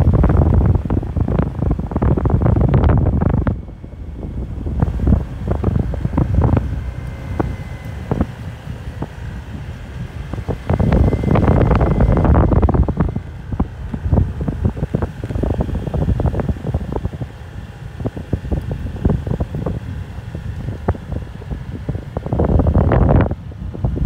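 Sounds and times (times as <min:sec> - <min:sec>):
motorcycle engine running: 0:00.0 - 0:24.0
wind buffeting on microphone: 0:00.0 - 0:24.0.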